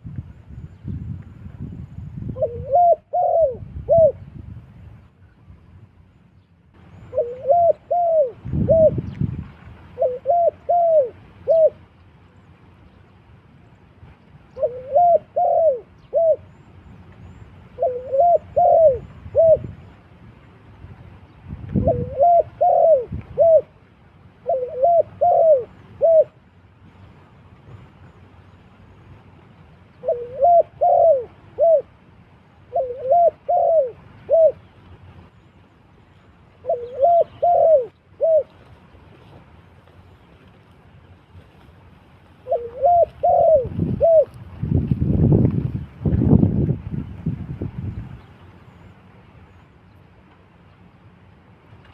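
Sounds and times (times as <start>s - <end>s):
dove cooing: 2.3s - 4.3s, 6.9s - 9.1s, 9.9s - 11.8s, 14.5s - 16.6s, 17.7s - 19.9s, 21.7s - 23.8s, 24.4s - 26.4s, 29.9s - 32.0s, 32.6s - 34.7s, 36.6s - 38.6s, 42.4s - 44.4s.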